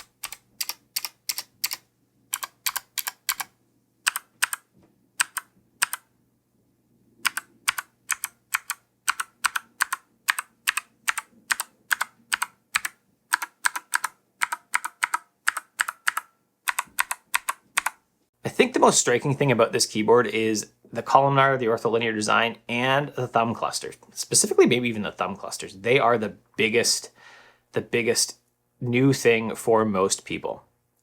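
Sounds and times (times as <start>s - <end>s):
mechanical keyboard key clicks: 0.0s - 3.5s.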